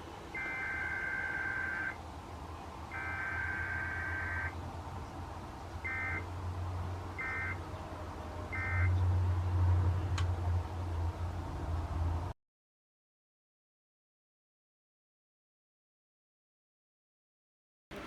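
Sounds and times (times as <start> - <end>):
two-tone digital chirping bursts: 0.4 - 2.0.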